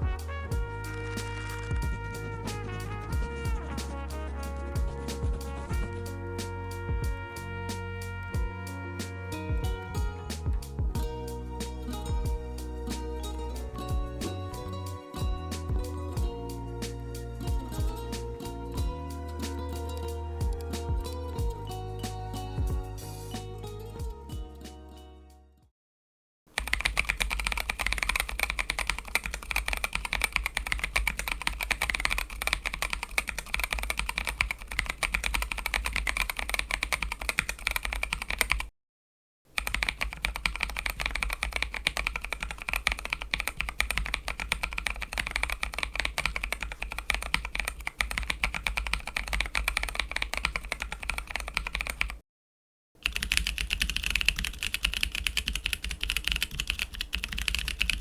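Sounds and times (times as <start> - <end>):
mechanical keyboard clacks: 26.6 - 38.7, 39.6 - 52.2, 53.0 - 58.0.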